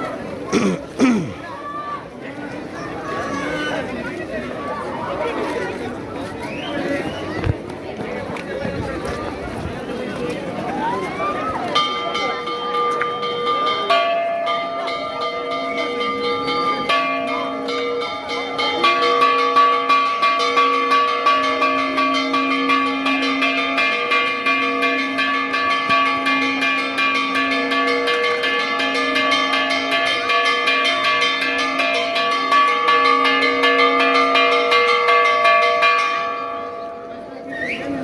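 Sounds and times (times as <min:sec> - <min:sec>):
church bells pealing: 0:10.8 - 0:38.0.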